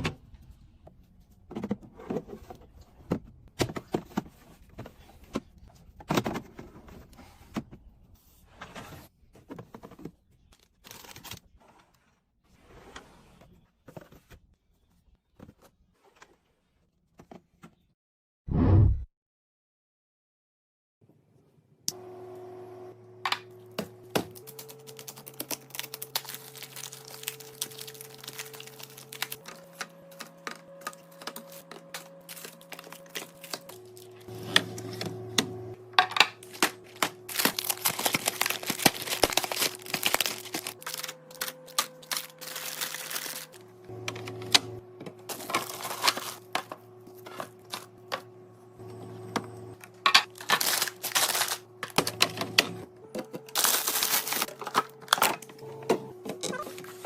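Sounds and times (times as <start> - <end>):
plastic crinkling: 24.4 - 34.3, 36.4 - 43.6, 45.3 - 46.5, 50.2 - 52.1, 53.5 - 55.3
background music sustained chords: 24.4 - 56.2.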